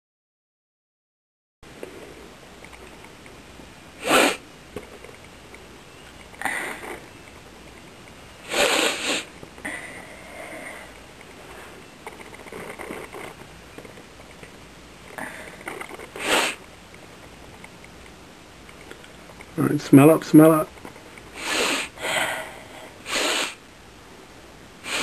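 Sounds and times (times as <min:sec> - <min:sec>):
person sniffling: 0:21.4 - 0:23.6.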